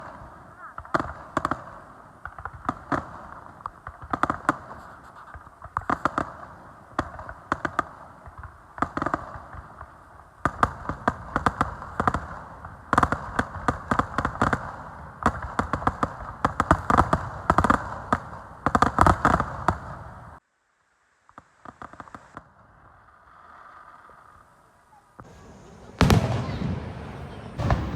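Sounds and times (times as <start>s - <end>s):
fireworks crackling: 0.0s - 20.4s, 21.2s - 27.9s
firework shells bursting: 25.2s - 27.9s.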